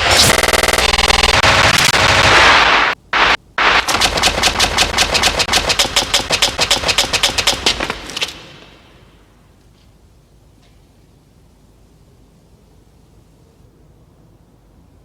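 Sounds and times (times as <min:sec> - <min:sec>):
automatic gunfire: 0:00.0 - 0:09.0.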